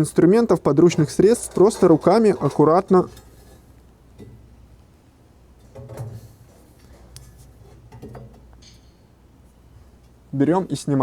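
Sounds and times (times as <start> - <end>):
metal scraping: 0.0 - 9.6
light metal clicks and knocks: 1.0 - 4.9, 5.5 - 9.1.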